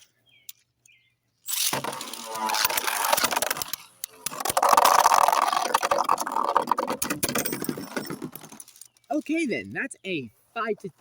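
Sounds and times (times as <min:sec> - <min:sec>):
spinning tops whirring and clattering: 0:01.5 - 0:08.8.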